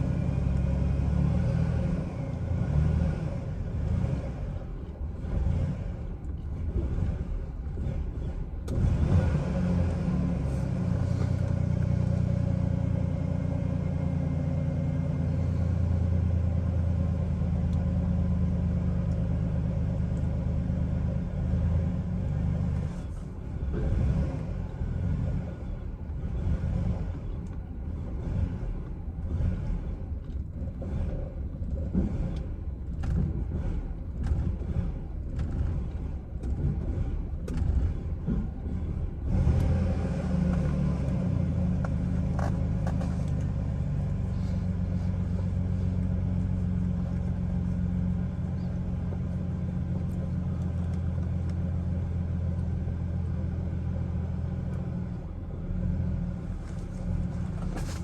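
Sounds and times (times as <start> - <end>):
engine idling roughly: 10.4 - 21.2, 27.1 - 39.3, 41.9 - 55.6.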